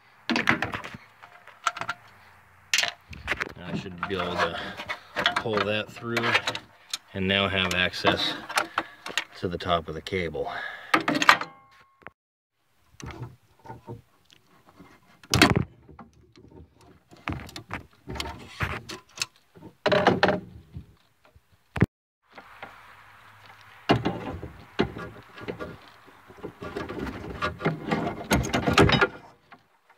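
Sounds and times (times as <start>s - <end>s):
metal clanks scrapes and rattles: 2.7s - 9.4s, 24.0s - 29.6s.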